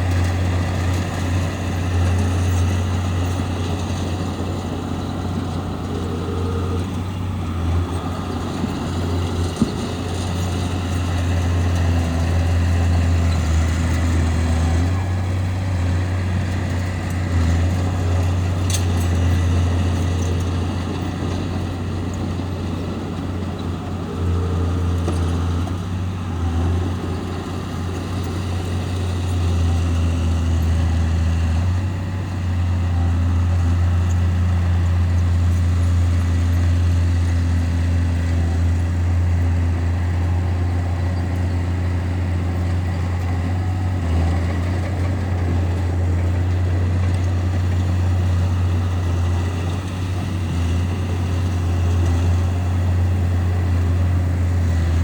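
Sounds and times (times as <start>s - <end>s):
bulldozer diesel engine droning: 0.0s - 55.0s.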